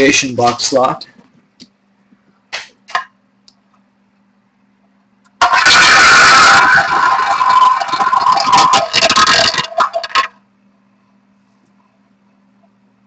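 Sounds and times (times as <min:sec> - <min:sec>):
wheel spinning with rattling whir: 0:05.4 - 0:10.3.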